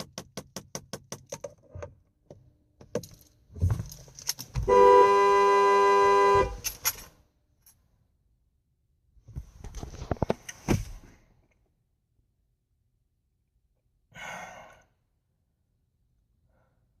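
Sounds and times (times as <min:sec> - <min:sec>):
car horn blast: 0:04.6 - 0:06.8.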